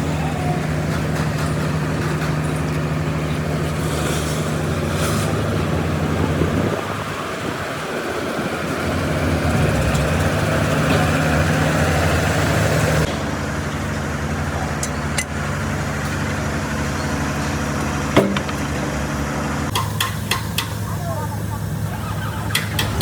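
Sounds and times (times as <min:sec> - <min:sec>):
heavy diesel engine running: 0:00.0 - 0:23.0
sharp metallic clicks: 0:19.7 - 0:20.8, 0:22.5 - 0:23.0.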